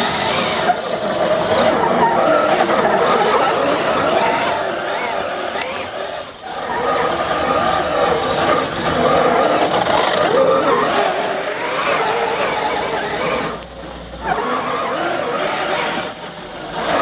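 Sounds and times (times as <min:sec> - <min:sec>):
rc car motor whine: 0:00.0 - 0:17.0
tyres on dry dirt: 0:00.0 - 0:17.0.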